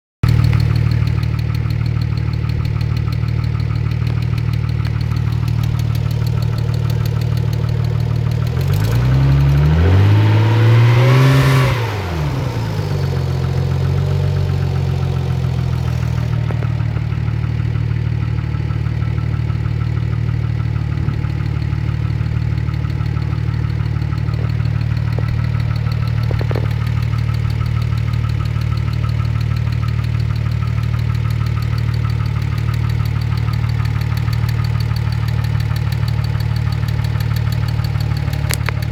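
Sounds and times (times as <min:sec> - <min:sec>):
car engine idling: 0:00.2 - 0:10.9, 0:11.8 - 0:38.9
odd engine noise: 0:00.2 - 0:38.9.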